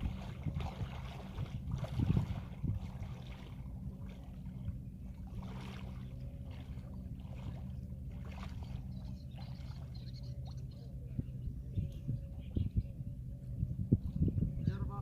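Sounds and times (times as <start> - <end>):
wind noise: 0.0 - 3.5, 11.1 - 15.0
faint water noise: 0.0 - 15.0
low engine hum: 0.0 - 15.0.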